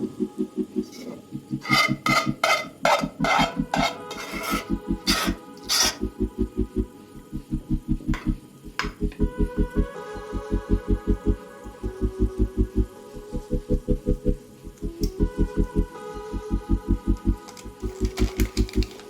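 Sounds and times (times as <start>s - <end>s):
music with pulsing low beat: 0.0s - 2.5s, 3.1s - 19.0s.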